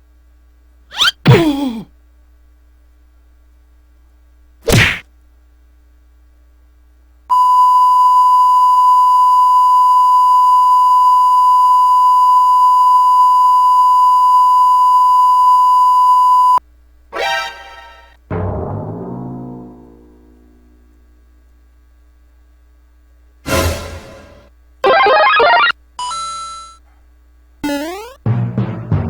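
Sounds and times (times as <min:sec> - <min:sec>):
censor bleep: 0:07.3 - 0:16.6.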